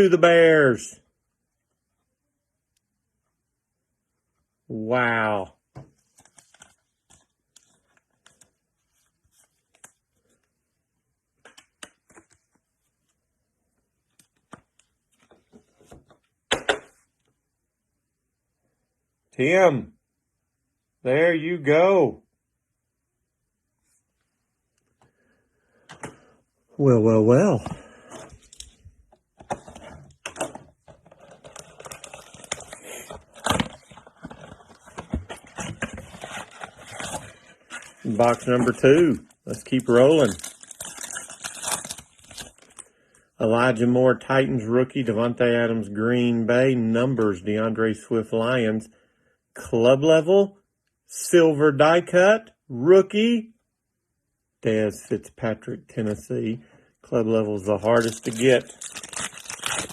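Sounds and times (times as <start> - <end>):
trading cards and packaging handled: 5.8 - 10.6, 14.0 - 16.3, 27.5 - 42.9, 57.7 - 59.9.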